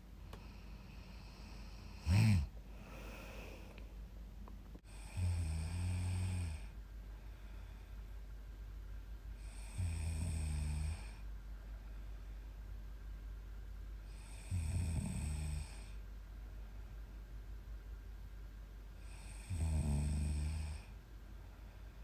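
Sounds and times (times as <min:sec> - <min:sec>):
woman snoring: 0:00.9 - 0:03.5, 0:04.8 - 0:06.8, 0:09.4 - 0:11.2, 0:14.1 - 0:16.0, 0:19.0 - 0:21.0
woman snorting: 0:02.0 - 0:03.3.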